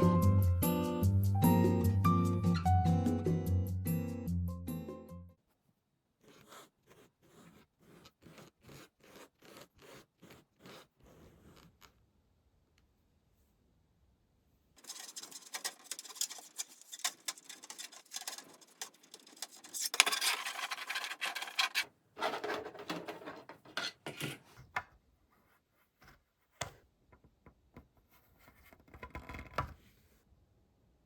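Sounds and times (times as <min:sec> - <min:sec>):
rubbing and scraping: 0:06.2 - 0:12.0, 0:14.8 - 0:24.7.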